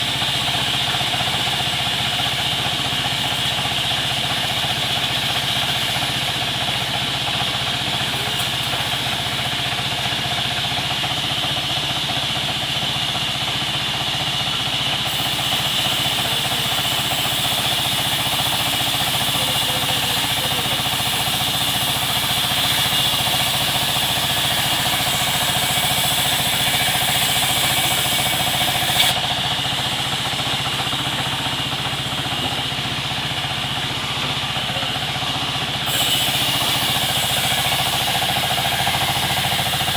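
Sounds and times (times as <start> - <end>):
sawmill machinery whining: 0.0 - 39.9
harsh hissing: 15.1 - 32.8, 35.7 - 39.9.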